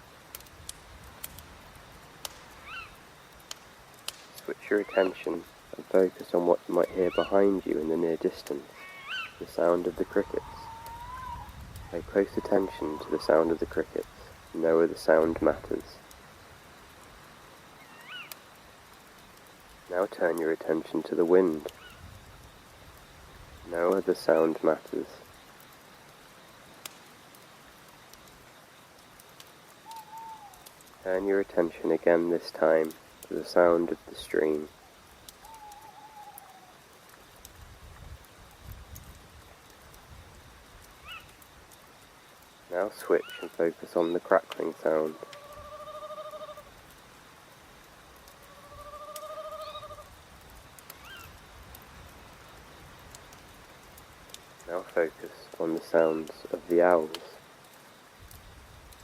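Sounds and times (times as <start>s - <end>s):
hiss of wind: 0.0s - 59.0s
small crackles: 0.0s - 59.0s
owl trilling: 2.6s - 3.0s, 6.9s - 7.4s, 8.8s - 9.4s, 10.2s - 13.3s, 17.8s - 18.4s, 29.8s - 30.6s, 35.4s - 36.8s, 41.0s - 41.4s, 45.1s - 46.7s, 48.4s - 50.1s, 51.0s - 51.4s
whistled animal call: 8.8s - 9.4s, 10.2s - 11.5s, 29.8s - 30.6s.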